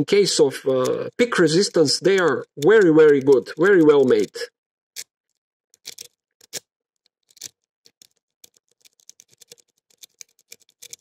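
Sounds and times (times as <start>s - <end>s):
lock pick clicking in padlock: 5.0s - 11.0s.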